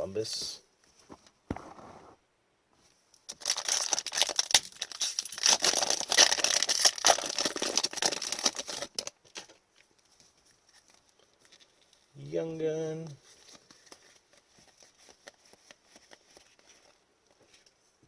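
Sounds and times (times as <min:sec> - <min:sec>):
foil wrapper torn and crinkled: 0:03.3 - 0:09.6.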